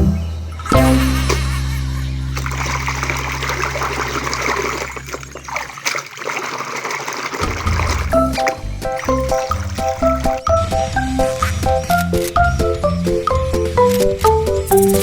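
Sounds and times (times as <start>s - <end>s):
water running and splashing: 2.3s - 12.6s.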